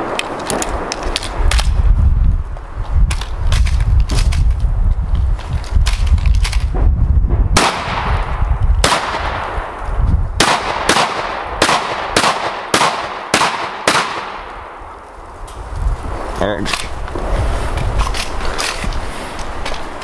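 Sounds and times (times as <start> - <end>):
low rumble: 0.8 - 12.2
shotgun shots: 7.6 - 9.8, 10.4 - 14.8.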